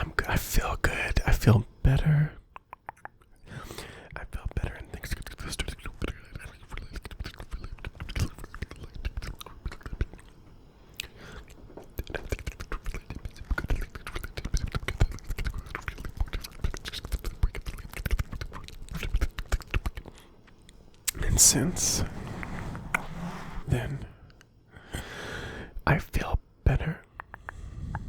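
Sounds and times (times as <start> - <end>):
whispering: 0.0 - 2.4, 4.1 - 10.3, 11.4 - 20.2, 21.1 - 22.3, 23.5 - 24.2, 25.8 - 28.0
wet mouth clicks and smacks: 2.5 - 3.4, 5.0 - 21.2, 27.0 - 28.0.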